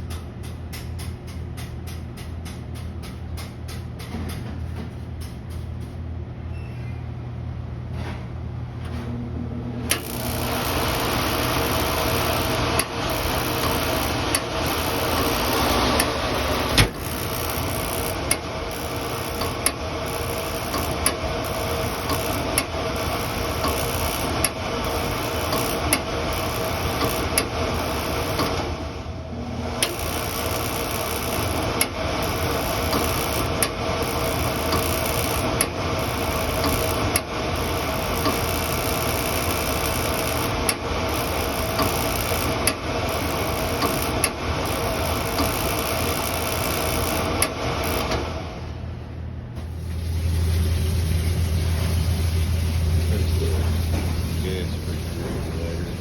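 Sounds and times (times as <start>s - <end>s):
machine humming: 9.4s - 56.0s
sharp mechanical clicks: 9.9s - 28.8s, 29.8s - 48.3s.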